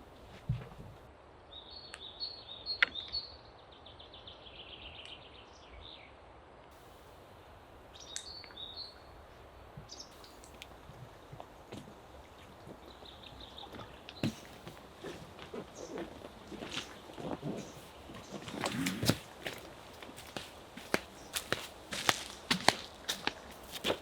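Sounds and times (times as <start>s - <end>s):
steady outdoor hiss: 0.0s - 24.0s.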